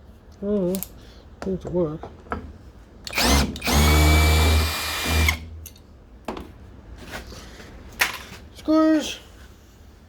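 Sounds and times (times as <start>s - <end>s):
power drill spinning: 3.1s - 5.4s.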